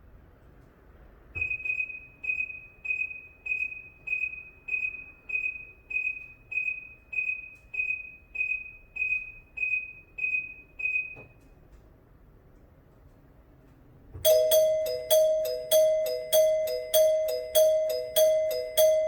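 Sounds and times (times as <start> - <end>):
truck turn alarm beeping: 1.4 - 11.4, 14.2 - 19.0.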